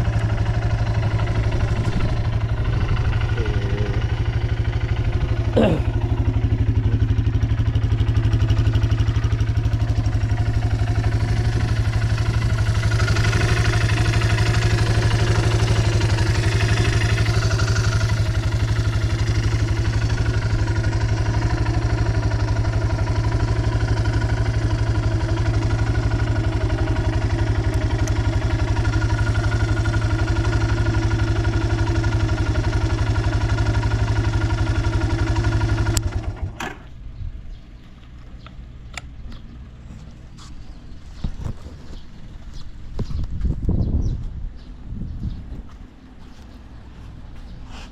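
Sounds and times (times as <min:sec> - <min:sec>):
atv engine idling: 0:00.0 - 0:43.2.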